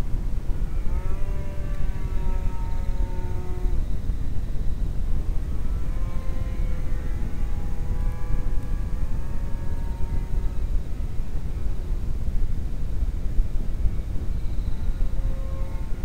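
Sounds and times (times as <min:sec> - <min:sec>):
model airplane motor whine: 0:00.0 - 0:16.0
steady low rumble: 0:06.7 - 0:15.2.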